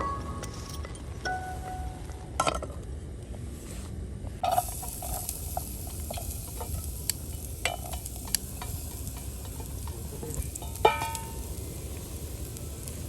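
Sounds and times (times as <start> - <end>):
food sizzling in a pan: 4.4 - 13.0.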